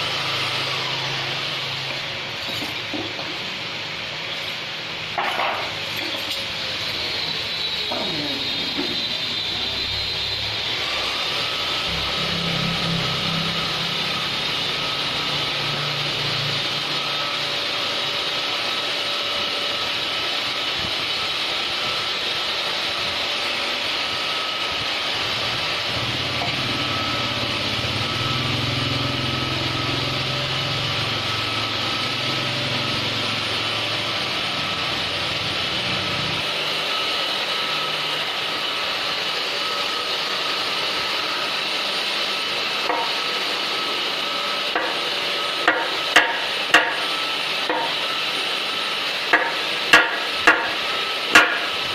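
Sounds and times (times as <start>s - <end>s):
small motor running: 0.0s - 51.9s.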